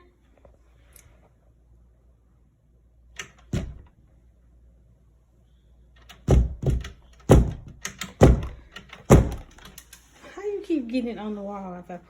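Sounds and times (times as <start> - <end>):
heavy knocks on a wall: 3.5 - 3.9, 6.3 - 9.5.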